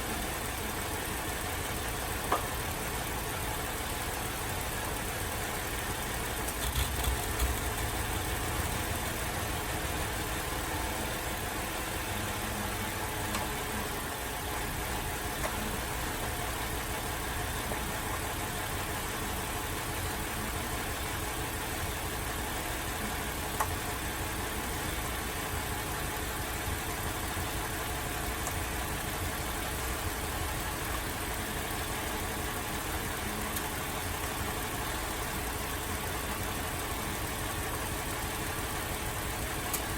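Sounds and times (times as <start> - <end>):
car engine idling rough: 0.0 - 39.9.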